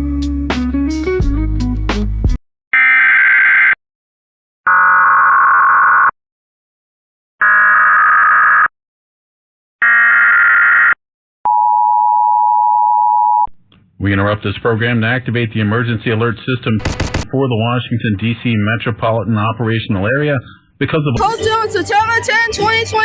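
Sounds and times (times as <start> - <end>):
guitar music: 21.2 - 23.0.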